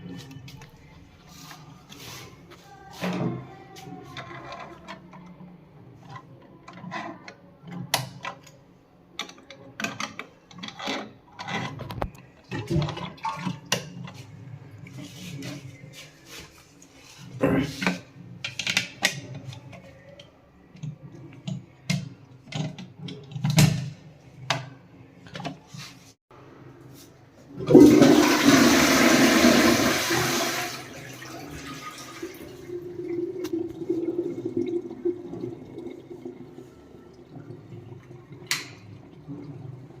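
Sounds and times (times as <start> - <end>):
toilet flushing: 27.5 - 40.0
water running: 27.6 - 40.0.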